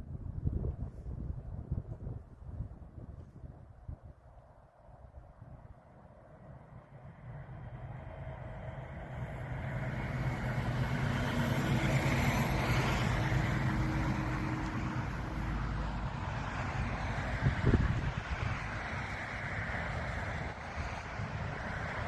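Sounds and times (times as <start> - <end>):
vehicle passing on road: 4.7 - 22.0.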